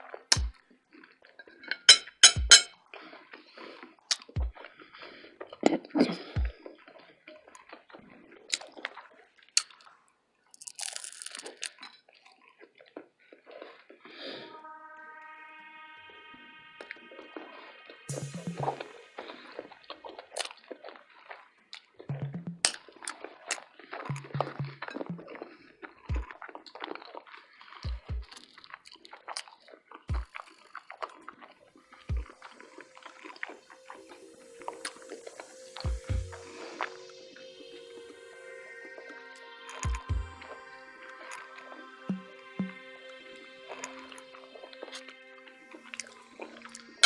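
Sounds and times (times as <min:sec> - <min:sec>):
food crunching and crackling: 0:00.0 - 0:02.2, 0:02.8 - 0:14.3, 0:19.2 - 0:22.1, 0:22.7 - 0:35.9
soft chewing: 0:00.0 - 0:02.2, 0:02.8 - 0:14.5, 0:19.2 - 0:22.1, 0:22.7 - 0:36.9
wet mouth clicks: 0:04.1 - 0:10.0, 0:19.8 - 0:31.6
low thumps: 0:24.1 - 0:25.2.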